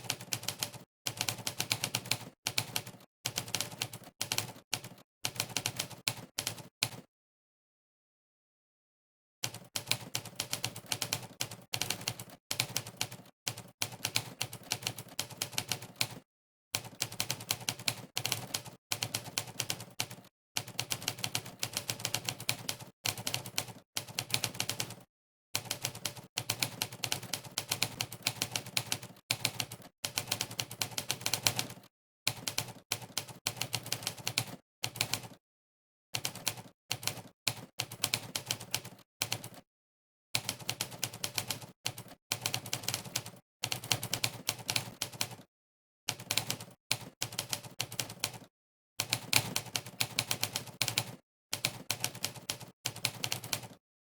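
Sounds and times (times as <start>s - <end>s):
typewriter keystroke clacks: 40.4s - 45.4s, 49.0s - 53.8s.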